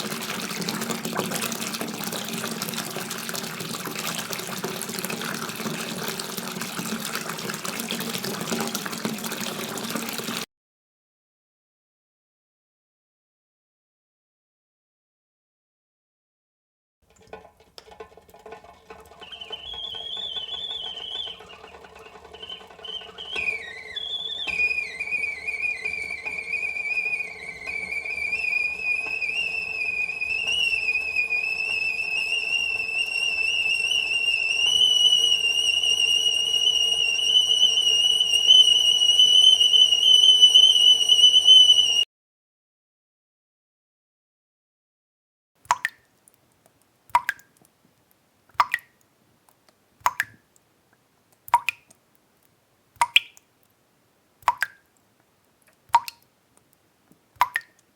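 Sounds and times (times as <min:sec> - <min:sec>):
kettle whistling: 0:00.0 - 0:10.5, 0:17.2 - 0:42.1.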